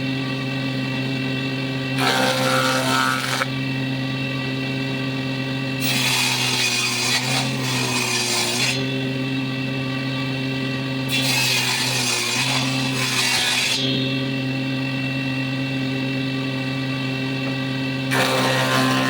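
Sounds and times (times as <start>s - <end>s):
motor-driven saw cutting wood: 0.0s - 19.0s.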